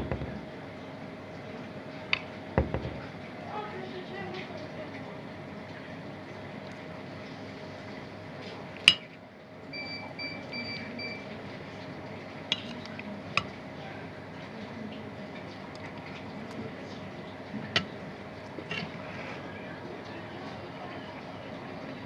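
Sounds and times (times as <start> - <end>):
steady low hum: 0.0 - 22.0
dishes clinking: 8.9 - 9.1, 12.5 - 13.6, 17.7 - 18.0, 18.6 - 19.1.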